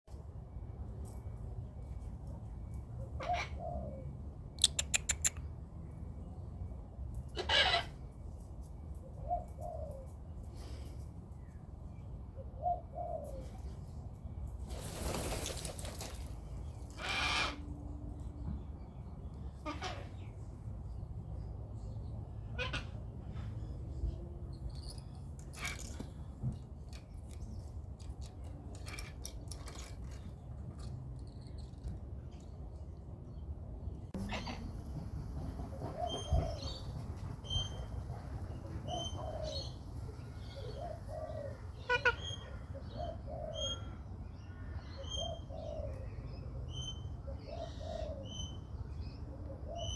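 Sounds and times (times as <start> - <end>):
bird squawk: 4.6 - 5.4, 41.8 - 42.6
sharp clicks: 4.6 - 5.4.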